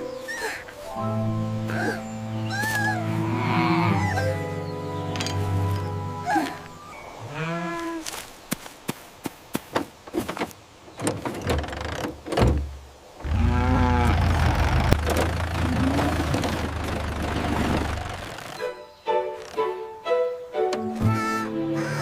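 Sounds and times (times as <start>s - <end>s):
wavering cry: 1.7s - 4.8s, 6.2s - 8.0s, 21.1s - 22.0s
low mechanical rumble: 13.2s - 18.5s.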